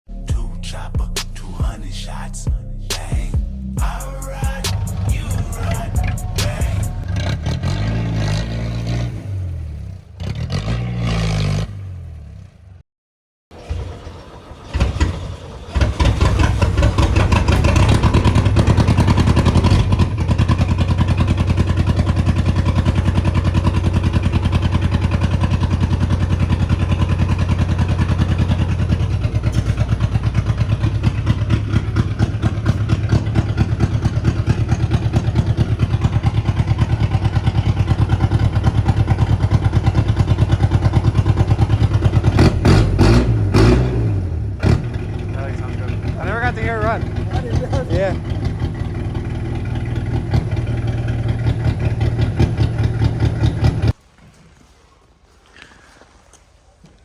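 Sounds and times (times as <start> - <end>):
music: 0.1 - 7.2
car engine starting and idling: 0.1 - 12.8, 13.5 - 54.0.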